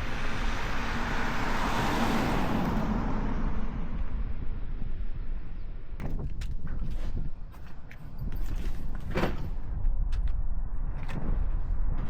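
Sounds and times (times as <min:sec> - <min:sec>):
car passing by: 0:00.0 - 0:04.4.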